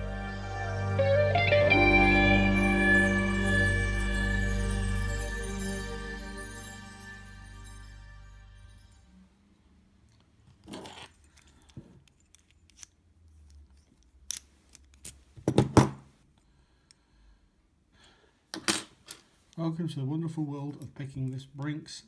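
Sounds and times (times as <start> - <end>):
padlock and lock picks clicking: 10.7 - 15.2.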